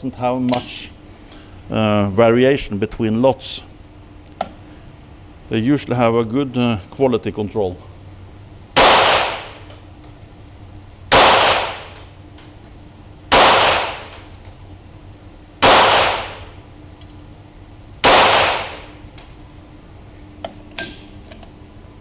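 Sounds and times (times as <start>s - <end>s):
pistol shots echoing: 8.8s - 9.7s, 11.1s - 12.0s, 13.3s - 14.3s, 15.6s - 16.6s, 18.0s - 19.0s.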